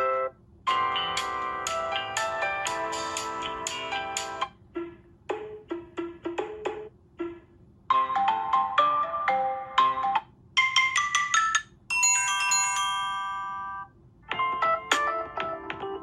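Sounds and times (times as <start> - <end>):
electronic ringtone melodies: 10.6 - 13.9.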